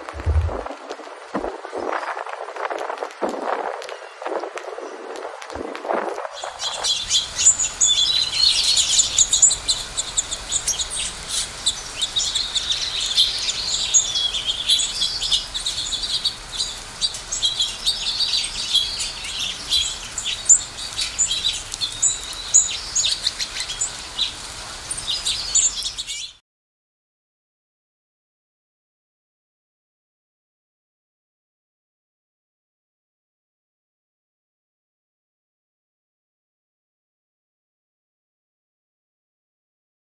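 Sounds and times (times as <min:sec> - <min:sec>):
songbird chirping and trilling: 0:06.4 - 0:26.4.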